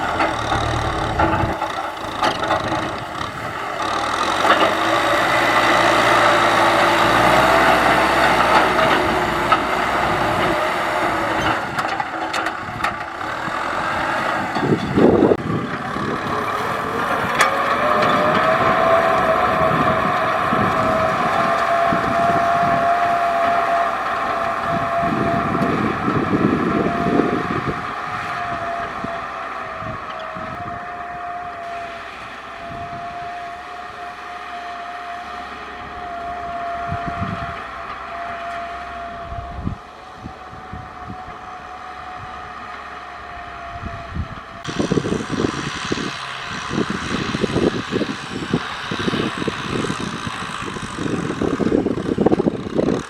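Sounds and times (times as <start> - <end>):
uneven buffeting rumble: 0.0 - 34.0, 38.9 - 53.0
tractor diesel engine running: 0.0 - 53.0
steady whine: 14.3 - 33.0.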